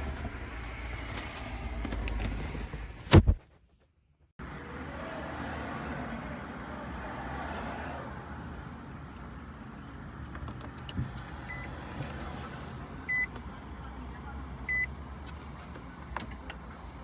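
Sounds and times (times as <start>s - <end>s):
car interior rumble: 0.0s - 3.5s.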